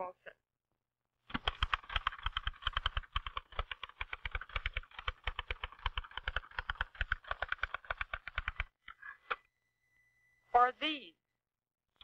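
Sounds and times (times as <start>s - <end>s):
typewriter keys clicking: 1.3s - 8.7s.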